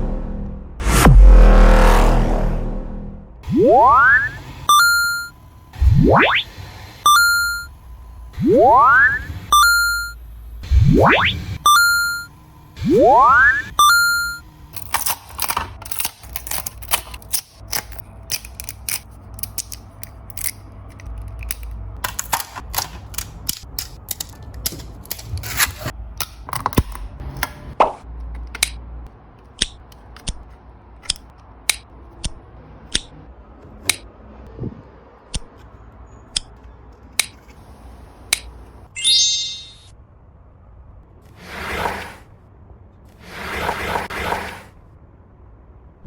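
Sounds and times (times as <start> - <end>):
low hum: 0.0 - 24.0
sharp mechanical clicks: 29.4 - 33.2, 38.3 - 38.6.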